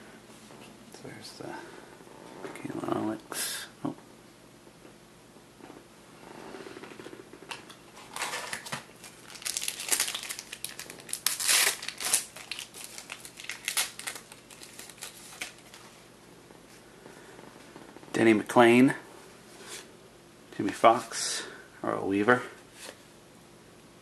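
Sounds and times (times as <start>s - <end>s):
wrapper crinkling and tearing: 8.0s - 15.9s.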